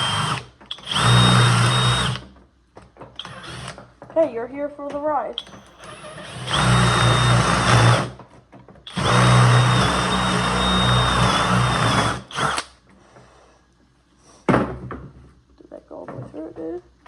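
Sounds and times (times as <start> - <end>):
jigsaw cutting wood: 0.0 - 2.2, 3.2 - 3.8, 5.8 - 8.2, 8.9 - 12.7.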